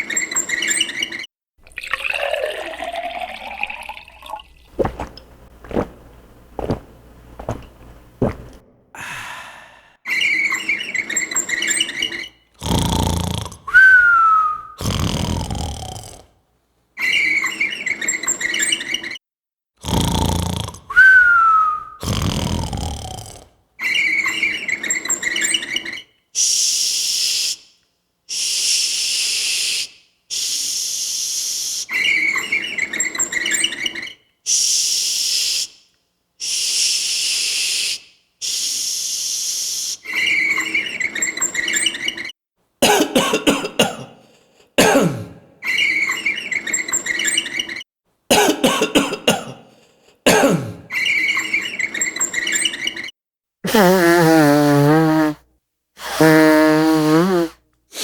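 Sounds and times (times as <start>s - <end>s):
person snoring: 8.2s - 10.0s, 12.6s - 13.7s, 14.8s - 16.2s, 19.8s - 20.9s, 22.0s - 23.5s
short hissing breaths: 36.4s - 40.0s.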